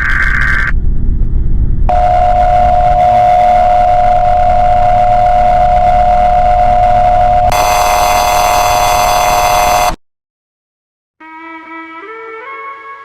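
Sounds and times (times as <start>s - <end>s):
constant low rumble: 0.0s - 7.6s
data header burst: 1.9s - 10.0s
steady attention tone: 1.9s - 10.0s.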